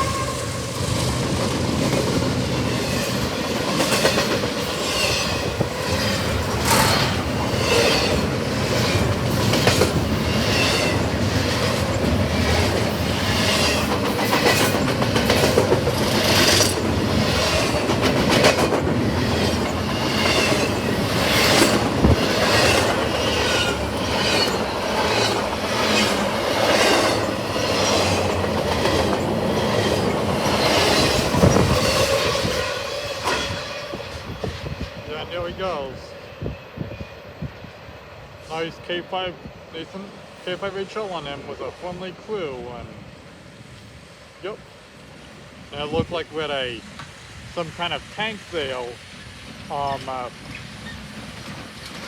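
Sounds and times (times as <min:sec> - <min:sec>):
freight train wheels clacking: 0:00.0 - 0:34.7
wheels squealing: 0:02.5 - 0:11.6, 0:19.1 - 0:32.3.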